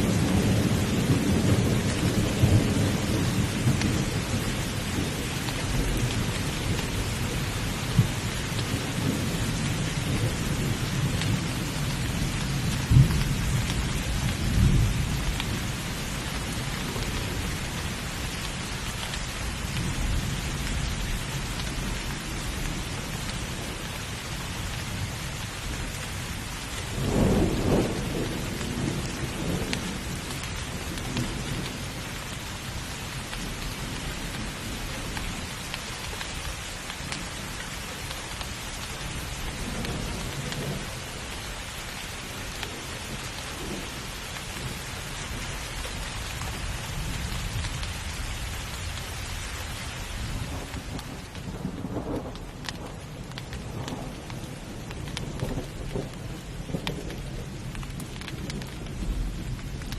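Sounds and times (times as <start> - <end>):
heavy rain: 0.0 - 59.9
rolling thunder: 26.8 - 32.3, 50.2 - 59.9.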